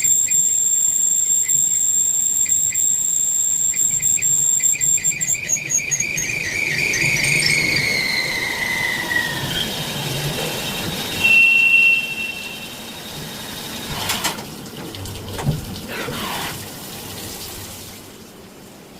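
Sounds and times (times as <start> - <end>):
cutting tool squealing on metal: 5.9 - 10.1
brief scraping noises: 15.9 - 16.6.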